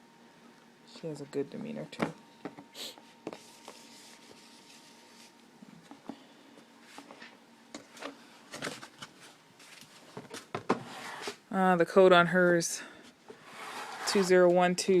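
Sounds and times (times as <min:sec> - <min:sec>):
faint steady hum: 0:00.0 - 0:15.0
rubbing: 0:13.4 - 0:14.4.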